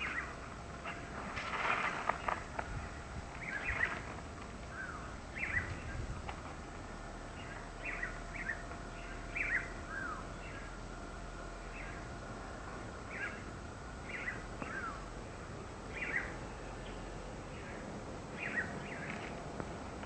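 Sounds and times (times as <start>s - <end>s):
small birds chirping: 0.0s - 1.2s, 3.3s - 6.2s, 7.2s - 10.8s, 13.1s - 19.4s
low rumble of breeze: 0.0s - 20.0s.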